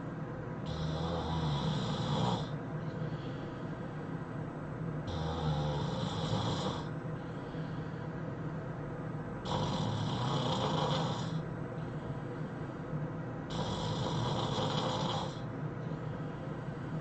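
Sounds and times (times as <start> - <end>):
person snoring heavily: 0.7 - 2.6, 5.1 - 6.9, 9.4 - 11.4, 13.5 - 15.5
quiet breathing: 0.7 - 17.0.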